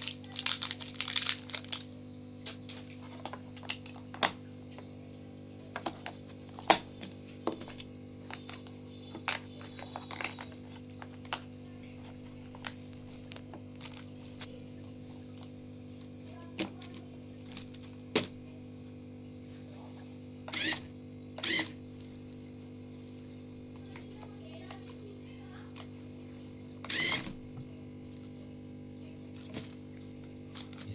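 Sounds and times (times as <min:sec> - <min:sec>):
plastic toy parts clicking: 0:00.0 - 0:01.9.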